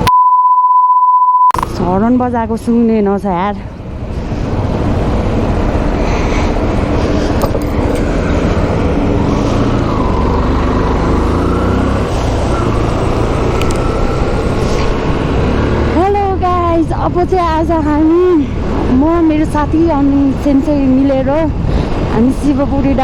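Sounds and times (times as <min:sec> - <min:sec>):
wind noise on microphone: 0:11.8 - 0:23.0.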